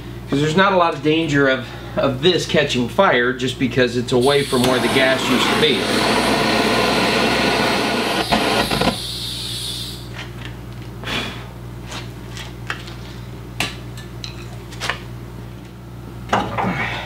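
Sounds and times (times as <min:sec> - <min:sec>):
steady low hum: 0:00.0 - 0:17.0
torch hissing: 0:04.2 - 0:10.1.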